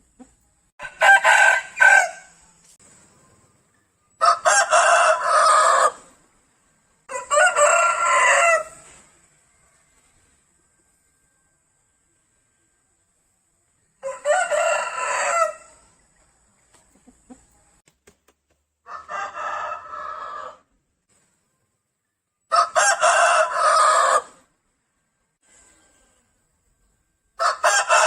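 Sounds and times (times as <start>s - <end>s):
rooster crowing: 0.8s - 2.4s, 4.2s - 6.2s, 7.1s - 9.0s, 14.0s - 15.9s, 18.8s - 20.7s, 22.5s - 24.5s, 27.4s - 28.0s.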